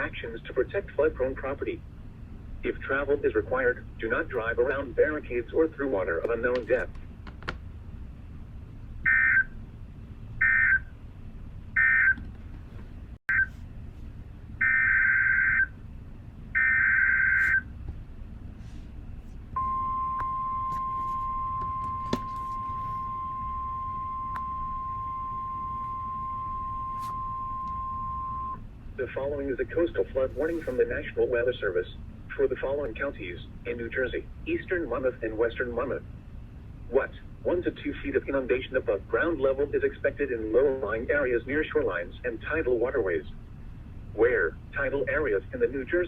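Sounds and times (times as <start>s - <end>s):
weather radio alarm tone: 9.1s - 9.5s, 14.6s - 15.7s, 16.6s - 17.7s, 19.6s - 29.2s.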